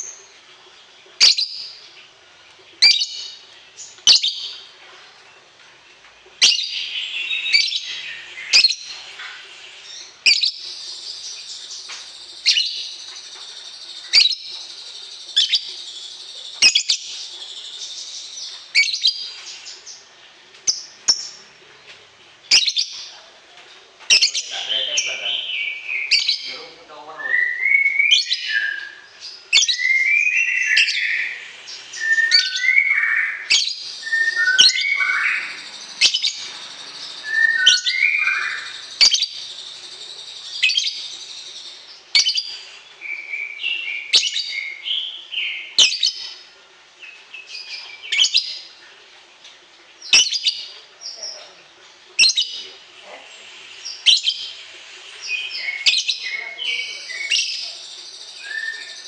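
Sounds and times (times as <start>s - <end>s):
songbird chipping and whistling: 6.4s - 20.0s, 24.1s - 46.4s, 53.4s - 59.0s.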